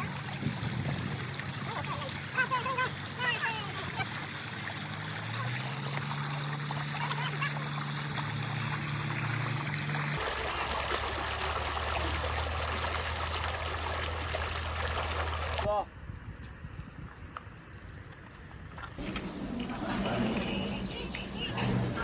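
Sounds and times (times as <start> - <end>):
water trickling and splashing: 0.0 - 15.7.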